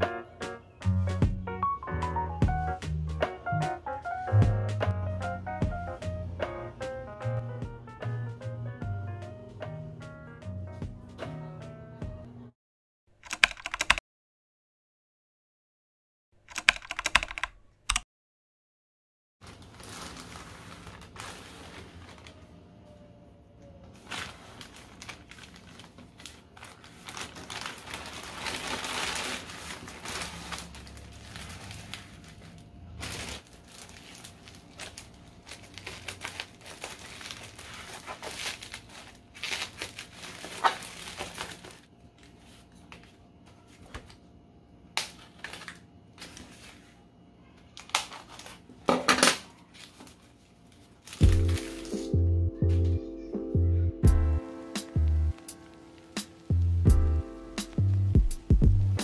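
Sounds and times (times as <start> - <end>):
clicks and taps: 16.5 - 18.0
packaging rustling and crinkling: 19.4 - 23.0, 23.8 - 44.2, 45.0 - 47.0, 47.7 - 52.1.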